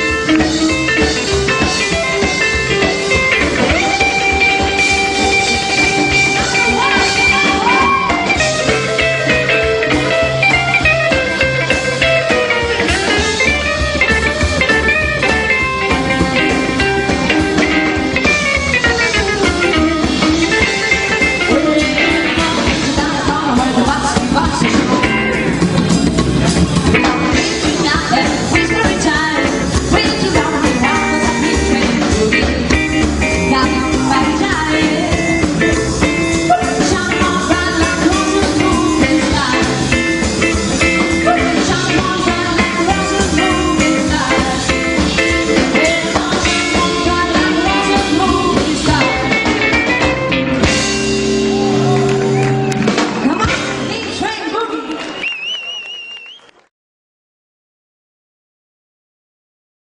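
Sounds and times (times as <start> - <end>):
rockabilly band playing live: 0.0 - 56.6
woman singing: 15.8 - 17.9, 21.2 - 25.2, 27.3 - 35.4, 36.4 - 40.2, 41.2 - 50.0.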